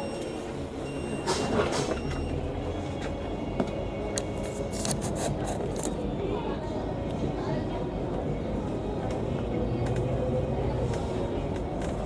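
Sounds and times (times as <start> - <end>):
bus engine running low: 0.0 - 12.0
bus door clunks: 1.1 - 2.3.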